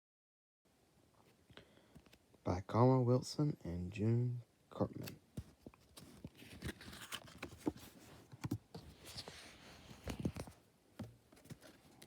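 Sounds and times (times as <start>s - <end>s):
paper rustling: 5.4s - 12.0s.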